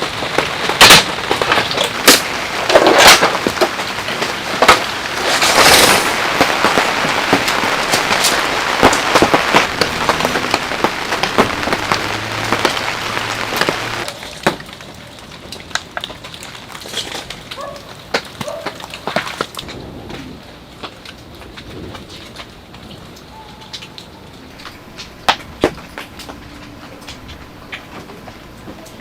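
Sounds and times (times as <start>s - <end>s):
heavy rain falling: 0.0s - 29.0s
loud raindrops striking close: 0.0s - 29.0s
scattered drips: 5.1s - 29.0s.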